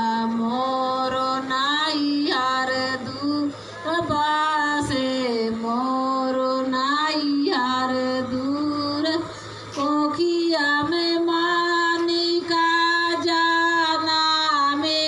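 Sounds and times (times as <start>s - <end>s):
woman singing folk song: 0.0s - 15.0s
singer breath: 9.3s - 9.8s.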